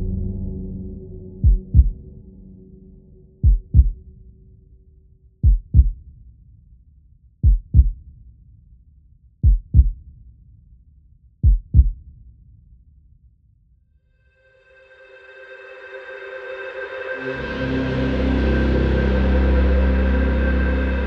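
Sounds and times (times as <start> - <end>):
faint low rumble: 0.0 - 4.9
heartbeat thumps: 1.4 - 2.1, 3.4 - 4.1, 5.4 - 6.0, 7.4 - 8.0, 9.4 - 10.0, 11.4 - 12.0.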